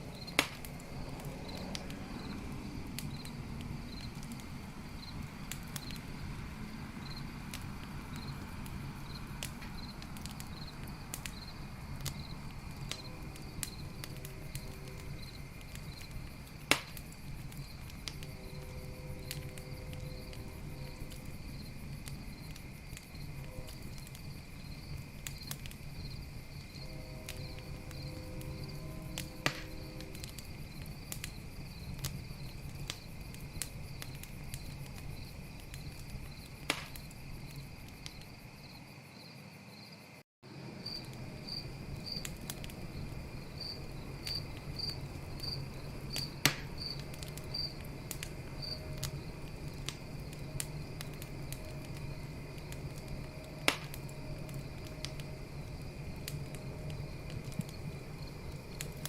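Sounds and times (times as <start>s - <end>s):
campfire crackling and popping: 0.0s - 38.6s, 40.5s - 59.0s
crickets trilling and chirping: 0.0s - 59.0s.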